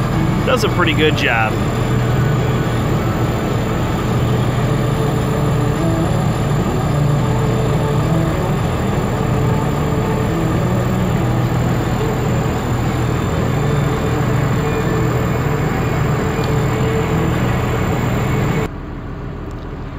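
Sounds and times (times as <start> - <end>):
diesel engine droning: 0.0 - 19.9.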